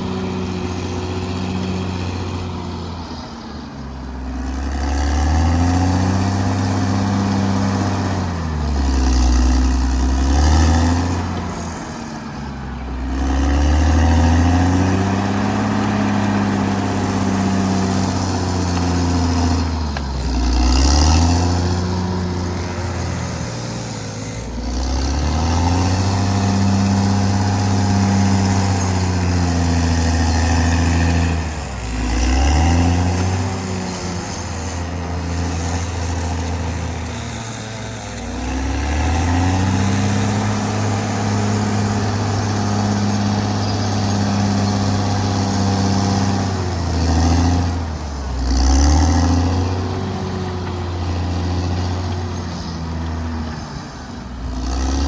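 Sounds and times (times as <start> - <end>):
bulldozer diesel engine under load: 0.0 - 55.0.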